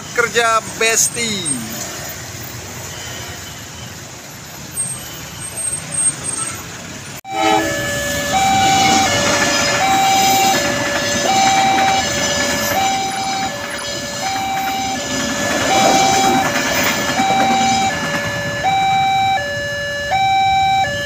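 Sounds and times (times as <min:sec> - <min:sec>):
road traffic: 0:00.0 - 0:21.0
level crossing two-tone alarm: 0:07.2 - 0:21.0.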